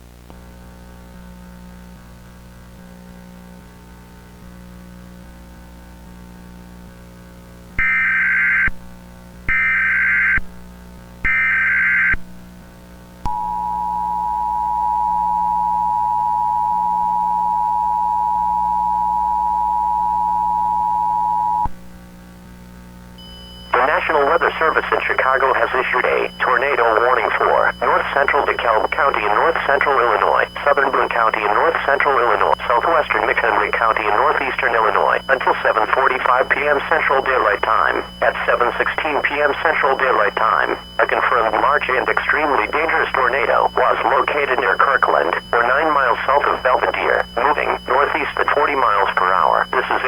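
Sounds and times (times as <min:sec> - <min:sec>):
digital data header bursts: 0:23.8 - 0:50.0.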